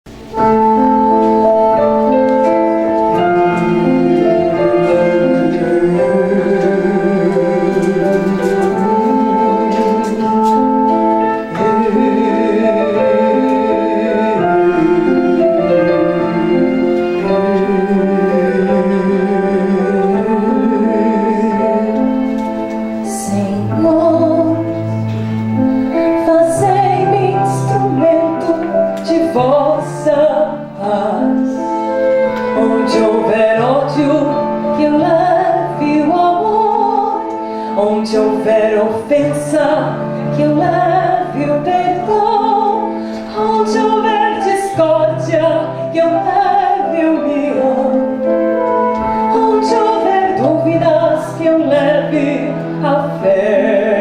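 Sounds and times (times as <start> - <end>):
slow piano chords: 0.1 - 54.0
slow tender live music: 0.1 - 54.0.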